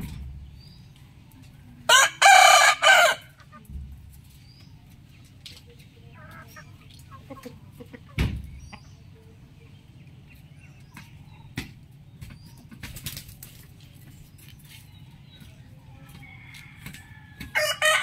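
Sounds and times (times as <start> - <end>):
small birds chirping: 0.0 - 1.9, 3.3 - 17.4
chickens clucking: 0.0 - 18.0
wings flapping: 12.8 - 13.7.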